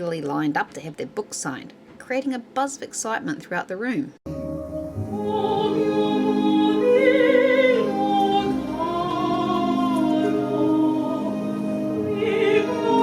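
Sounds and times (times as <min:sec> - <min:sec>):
operatic singing: 0:04.3 - 0:13.0
sustained accompaniment: 0:04.3 - 0:13.0.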